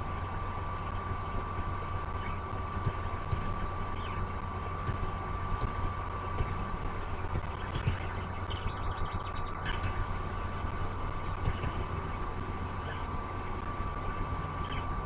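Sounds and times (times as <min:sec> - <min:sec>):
constant hum tone: 0:00.0 - 0:15.0
outdoor rumble and hiss: 0:00.0 - 0:15.0
faint high ticks: 0:09.6 - 0:10.0, 0:11.4 - 0:11.8.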